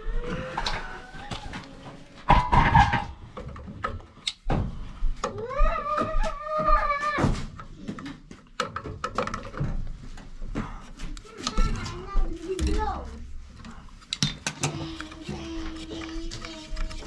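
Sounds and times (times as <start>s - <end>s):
metal parts clicking and knocking: 8.0s - 9.9s, 13.6s - 17.0s.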